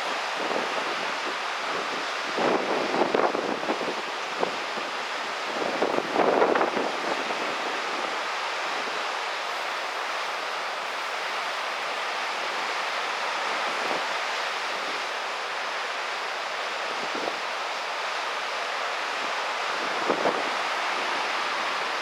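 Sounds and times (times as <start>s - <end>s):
wind blowing across microphone: 0.0s - 9.8s, 12.1s - 15.2s, 16.8s - 17.6s, 19.1s - 22.0s
ocean surf: 0.0s - 22.0s.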